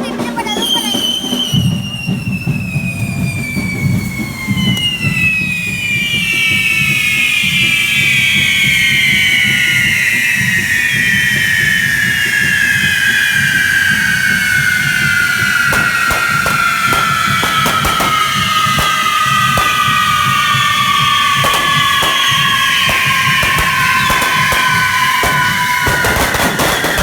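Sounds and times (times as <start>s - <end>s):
whistling fire fountains: 0.1s - 27.0s
firework cracks: 14.9s - 27.0s.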